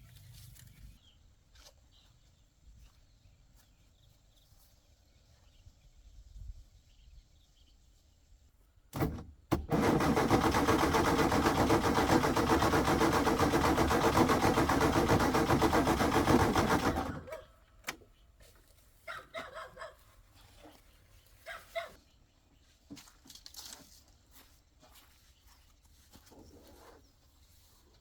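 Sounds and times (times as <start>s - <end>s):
motor running loud: 9.0s - 17.3s.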